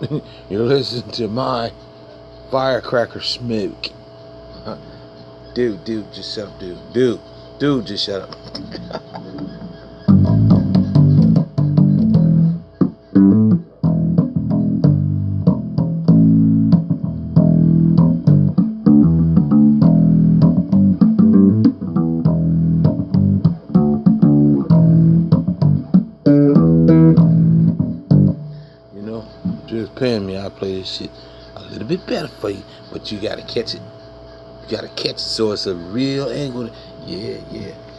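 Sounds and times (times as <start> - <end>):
bass guitar riffs: 7.0 - 30.5.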